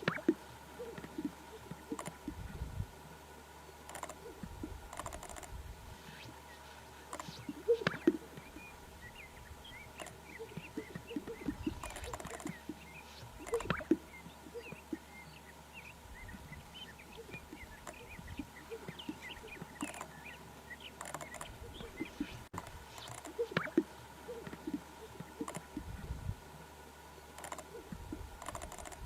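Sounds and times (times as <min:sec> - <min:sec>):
faint bird chirps: 0:03.9 - 0:26.0.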